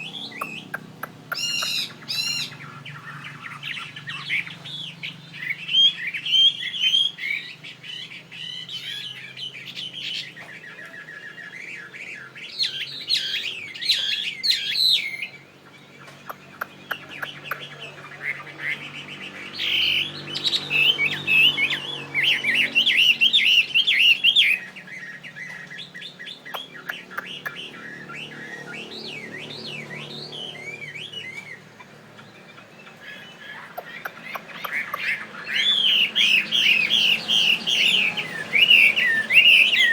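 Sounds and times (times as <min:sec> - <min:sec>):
bird singing whistles: 0:00.0 - 0:15.4, 0:33.1 - 0:39.9.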